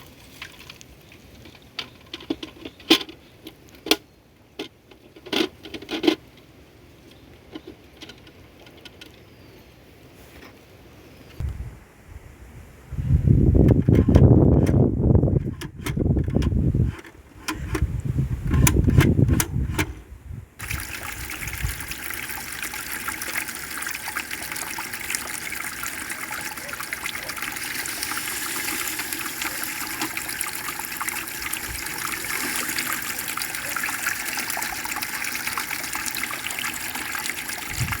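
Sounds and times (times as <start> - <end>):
toilet flush rushing: 20.6 - 38.0
water hissing into tank: 20.6 - 38.0.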